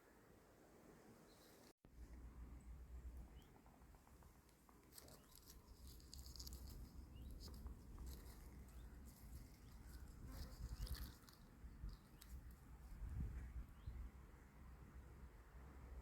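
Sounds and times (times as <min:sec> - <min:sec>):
light rustling and crackling: 0:03.5 - 0:13.5.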